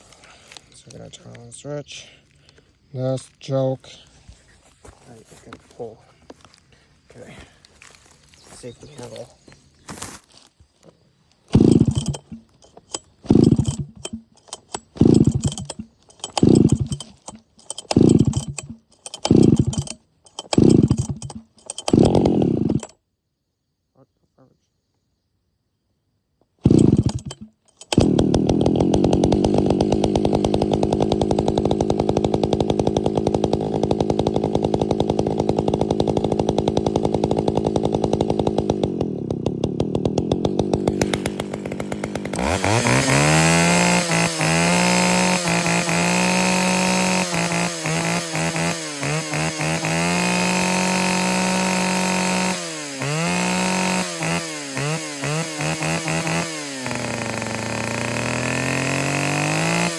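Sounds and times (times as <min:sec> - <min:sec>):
chainsaw revving: 0:11.5 - 0:23.0, 0:26.6 - 0:59.9.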